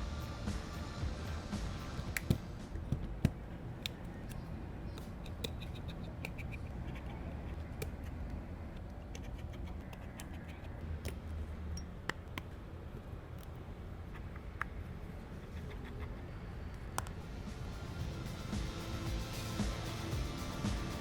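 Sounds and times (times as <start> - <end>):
steady low hum: 0.0 - 21.0
hand tools clicking and scratching: 8.8 - 11.2.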